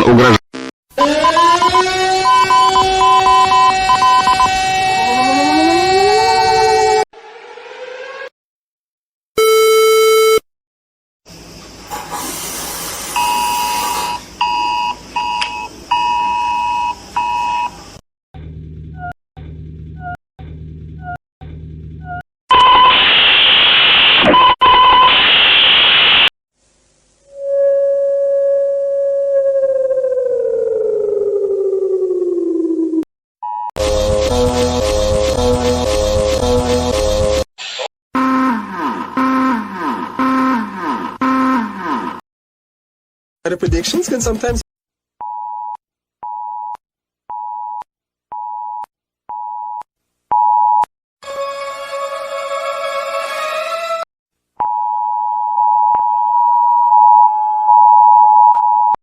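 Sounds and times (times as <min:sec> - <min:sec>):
siren-like tone sliding down: 0:01.0 - 0:08.3, 0:27.3 - 0:33.0
loud static burst with tones: 0:22.6 - 0:26.3.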